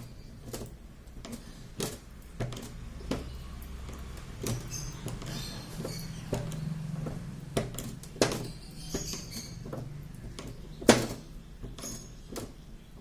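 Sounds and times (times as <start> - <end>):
running motor hum: 2.0 - 11.7.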